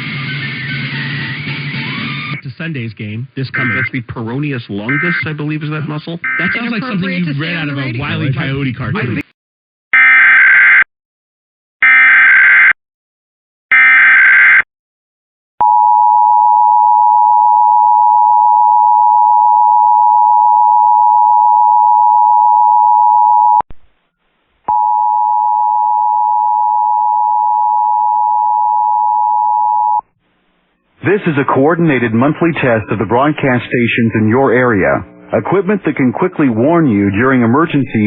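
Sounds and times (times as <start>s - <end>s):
digital header bursts: 3.5s - 4.0s, 4.8s - 5.4s, 6.2s - 7.4s
two-tone attention signal: 3.6s - 3.9s, 4.9s - 5.2s, 6.2s - 6.9s
wavering alert tone: 6.3s - 6.7s.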